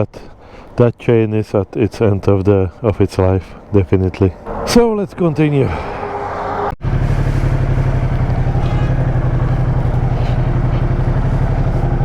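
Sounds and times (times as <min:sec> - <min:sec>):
motorcycle engine running: 0:06.8 - 0:12.0.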